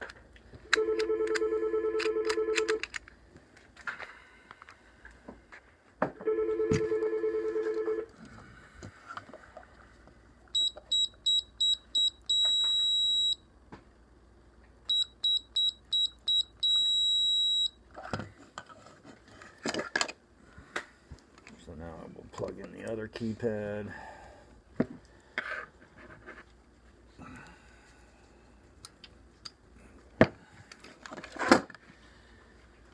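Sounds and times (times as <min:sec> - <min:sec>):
clicks and handling noise: 0:00.0 - 0:05.7, 0:30.7 - 0:31.9
keypad beeps: 0:10.6 - 0:13.4, 0:14.9 - 0:17.7
long beep: 0:10.6 - 0:13.4, 0:14.9 - 0:17.8.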